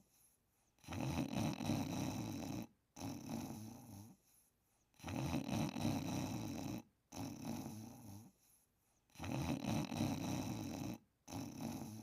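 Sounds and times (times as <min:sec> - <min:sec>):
person snoring: 0:00.8 - 0:04.2, 0:05.0 - 0:08.4, 0:09.1 - 0:12.0.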